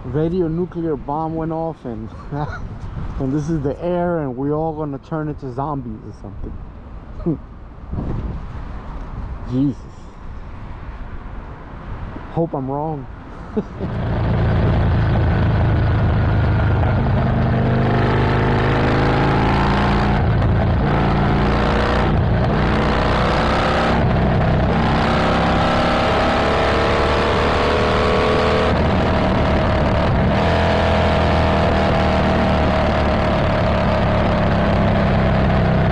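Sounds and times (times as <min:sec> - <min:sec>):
motorcycle engine accelerating: 0:13.8 - 0:35.9.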